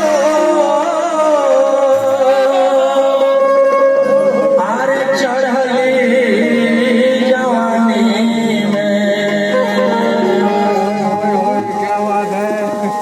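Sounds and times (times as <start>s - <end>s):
held folk melody: 0.0s - 13.0s
wavering melodic line: 9.6s - 13.0s.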